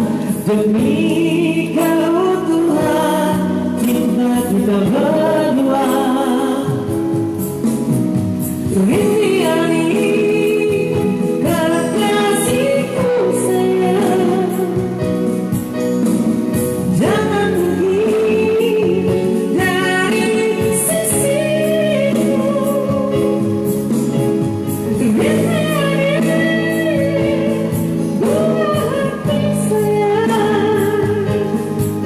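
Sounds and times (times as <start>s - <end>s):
man singing with vibrato: 0.0s - 7.4s
instrumental accompaniment: 0.0s - 32.0s.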